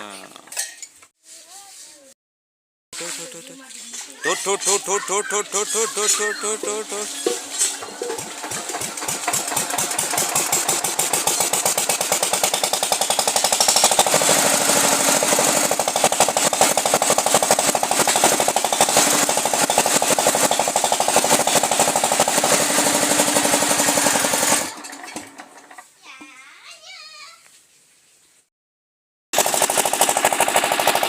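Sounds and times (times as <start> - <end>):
diesel pump engine running: 4.2 - 24.9, 29.4 - 31.0.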